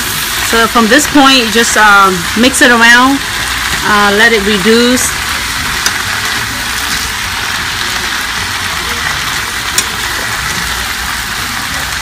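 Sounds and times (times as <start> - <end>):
food sizzling in a pan: 0.0 - 12.0
utensil clicking against pan: 5.8 - 7.1, 9.7 - 10.0.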